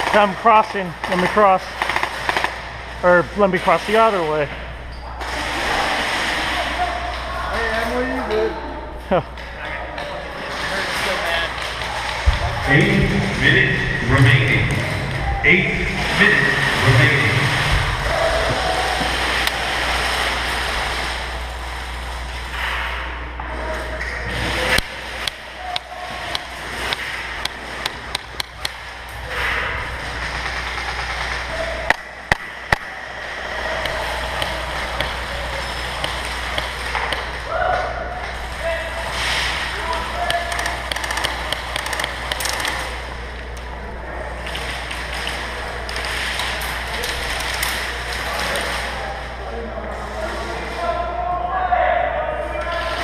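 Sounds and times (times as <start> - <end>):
low hum: 0.9 - 50.8
rapid airsoft gunfire: 1.0 - 2.9, 29.8 - 37.0.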